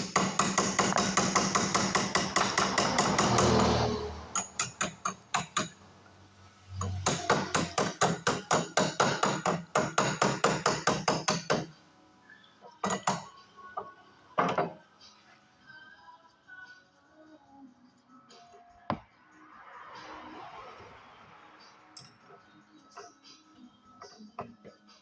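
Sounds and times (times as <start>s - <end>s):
hammer strikes: 0.0s - 5.8s, 6.8s - 11.7s, 12.8s - 13.3s.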